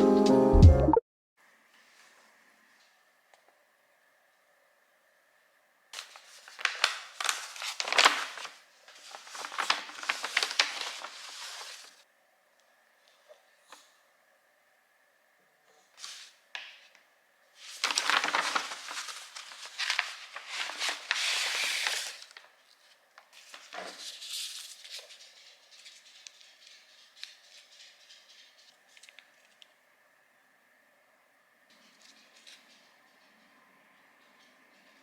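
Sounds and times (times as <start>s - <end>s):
crinkling and rustling: 6.0s - 12.0s, 17.6s - 29.8s, 31.7s - 33.4s.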